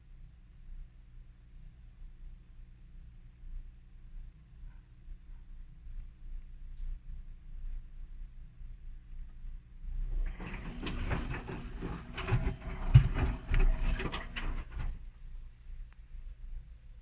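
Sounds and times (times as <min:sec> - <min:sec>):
clothes and water sloshing: 0:10.2 - 0:15.0
washing machine drum turning: 0:10.2 - 0:15.0.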